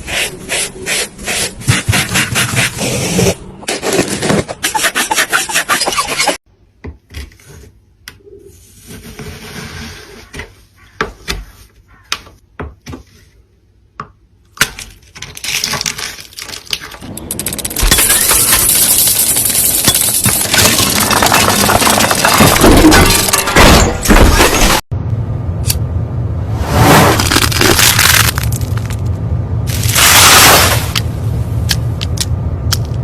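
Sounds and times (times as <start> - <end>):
rough rasping and scraping: 0.0 - 6.4.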